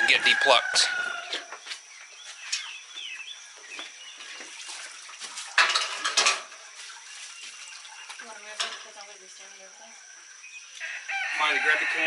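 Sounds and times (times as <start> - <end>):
chickens chirping: 0.0 - 4.5
metal pot clinking: 5.6 - 6.6.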